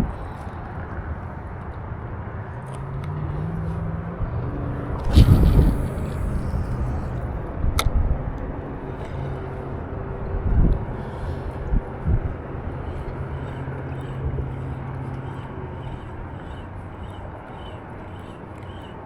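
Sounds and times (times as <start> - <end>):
outdoor rumble: 2.0 - 19.0
distant motor humming: 2.8 - 19.0
scuffing burst with low thumps: 5.0 - 6.8.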